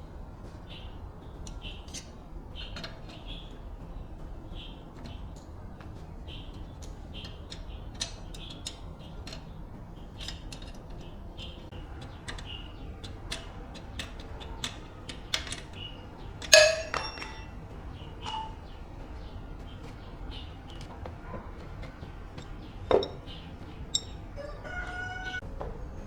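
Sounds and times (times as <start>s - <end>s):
small birds chirping: 0.0s - 26.0s
metal parts tapping and clicking: 0.4s - 24.4s
loud ringing metal clang: 16.5s - 17.6s, 18.2s - 18.6s.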